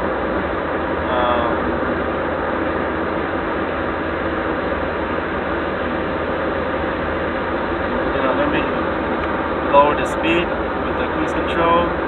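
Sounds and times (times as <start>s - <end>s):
car cabin road and engine noise: 0.0s - 12.0s.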